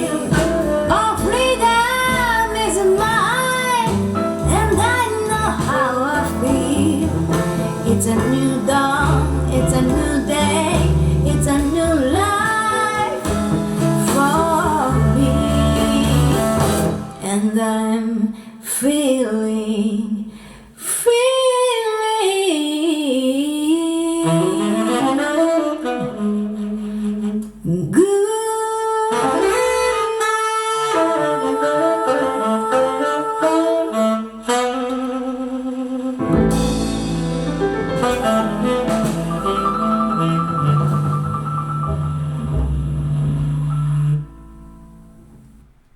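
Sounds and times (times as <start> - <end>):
deep bass: 0.0 - 17.2, 36.2 - 45.9
jazz saxophone and brass: 0.0 - 17.7, 23.9 - 45.4.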